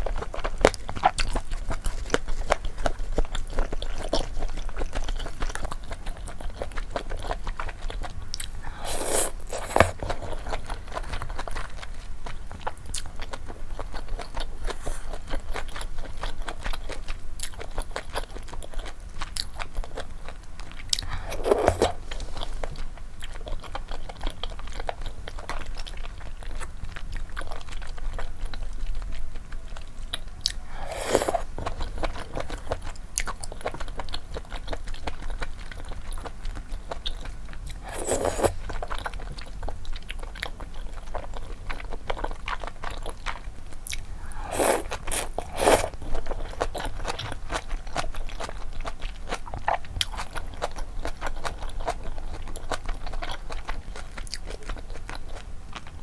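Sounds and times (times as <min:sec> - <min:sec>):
close chewing with mouth clicks: 0:00.0 - 0:56.0
louder longer eating sounds: 0:08.4 - 0:10.7, 0:20.9 - 0:22.8, 0:30.4 - 0:32.8, 0:37.7 - 0:38.9, 0:43.8 - 0:46.2.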